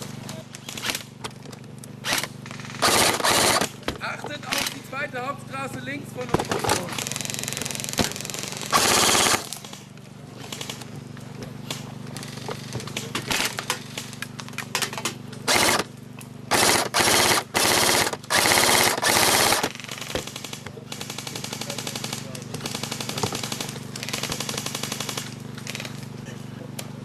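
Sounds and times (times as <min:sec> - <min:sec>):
airsoft guns firing bursts: 0:02.0 - 0:05.1, 0:06.2 - 0:14.4, 0:15.4 - 0:26.1
distant rattling gunfire: 0:06.4 - 0:10.9, 0:16.5 - 0:26.0.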